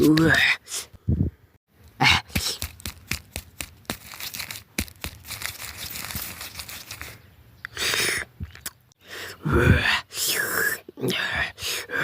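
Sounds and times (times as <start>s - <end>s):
roasted meat tearing and crackling: 2.4s - 7.2s.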